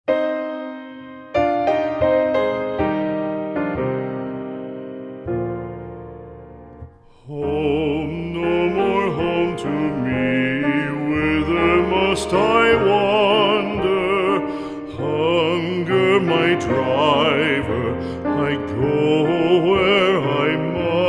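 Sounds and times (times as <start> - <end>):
musical accompaniment: 0.1 - 21.0
person singing with vibrato: 7.0 - 21.0.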